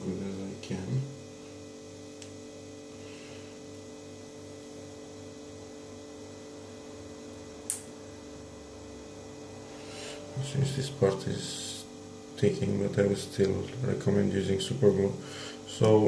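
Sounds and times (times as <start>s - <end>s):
electrical hum: 0.0s - 16.0s
sharp click: 7.7s - 7.9s.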